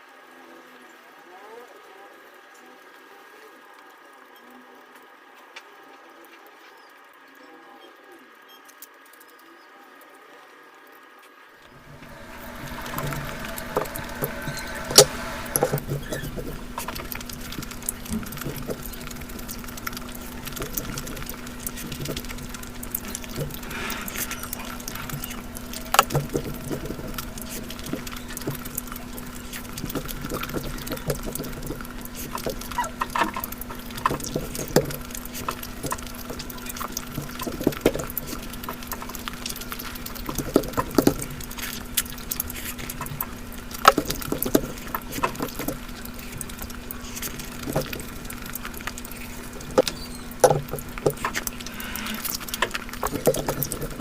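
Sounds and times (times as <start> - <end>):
steady low hum: 11.7 - 54.0.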